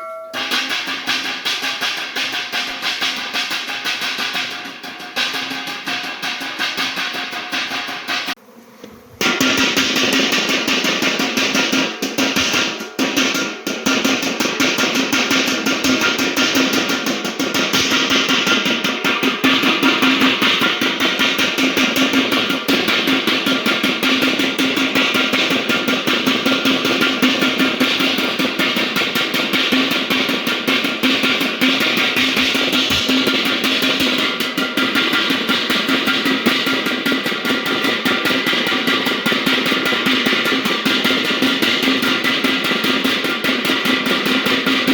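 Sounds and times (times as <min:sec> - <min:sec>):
music with drums and plucked guitar: 0:09.2 - 0:44.9.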